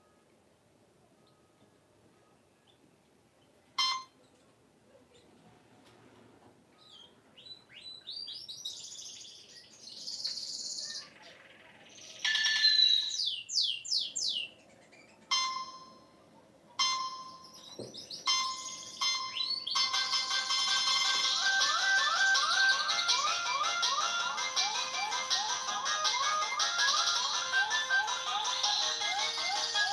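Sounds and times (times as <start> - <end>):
melodic ringtone: 3.8 - 4.1, 12.1 - 13.3, 15.3 - 29.9
short electronic tones: 3.8 - 4.2
rapid rising ringtone chirps: 12.1 - 13.5, 15.3 - 16.2, 16.8 - 29.9.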